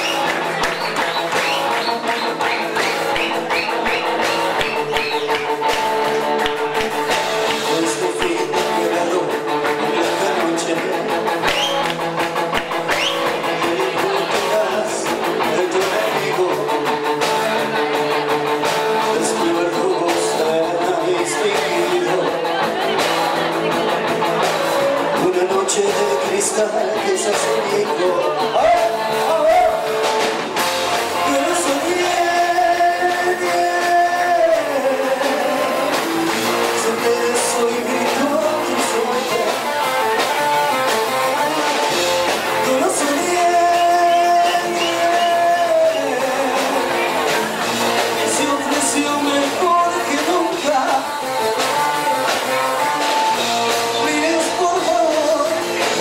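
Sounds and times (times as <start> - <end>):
instrumental accompaniment: 0.0 - 56.0
person singing long notes: 31.1 - 56.0.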